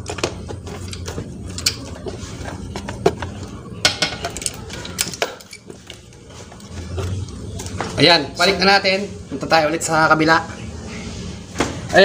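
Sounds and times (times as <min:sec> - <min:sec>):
low steady hum: 0:00.0 - 0:12.0
metal tools clinking: 0:03.8 - 0:06.7.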